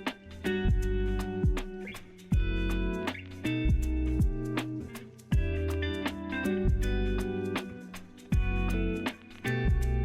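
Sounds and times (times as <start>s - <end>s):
clicking beat: 0.0s - 10.0s
plucked guitar-like notes: 0.0s - 10.0s
deep bass: 0.6s - 1.6s, 3.6s - 4.5s, 5.4s - 5.9s, 6.7s - 7.4s, 8.4s - 9.0s, 9.7s - 10.0s.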